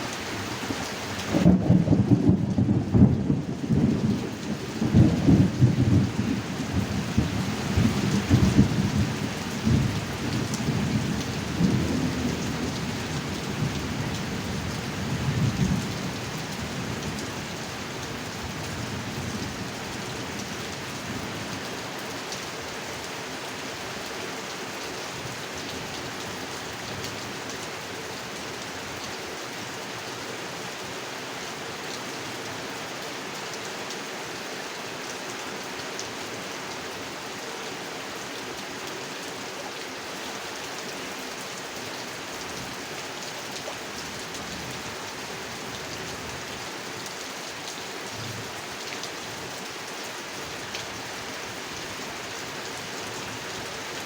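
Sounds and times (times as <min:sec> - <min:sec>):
heavy rain falling: 0:00.0 - 0:54.0
rolling thunder: 0:01.3 - 0:04.2.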